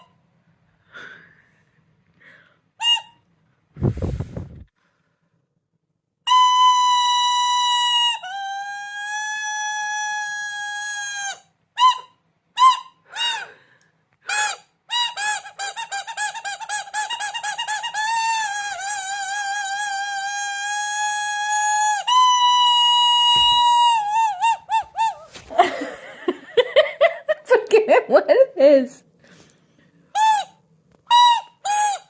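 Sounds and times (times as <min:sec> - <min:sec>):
shrill whistle-like tones: 0:02.8 - 0:03.2, 0:06.3 - 0:13.5, 0:17.6 - 0:25.4, 0:30.1 - 0:32.0.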